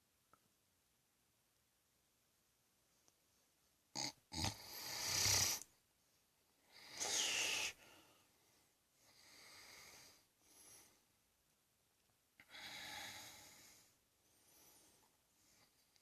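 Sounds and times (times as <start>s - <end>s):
man snoring: 4.0s - 5.6s, 6.8s - 7.8s
short snort: 4.0s - 5.7s, 6.8s - 7.8s.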